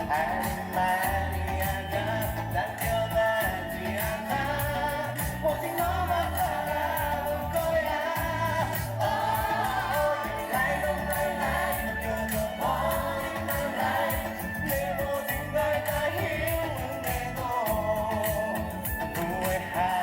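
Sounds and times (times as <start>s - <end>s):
live pop music: 0.0s - 20.0s
person singing: 0.0s - 20.0s
steady drum beat: 0.0s - 20.0s.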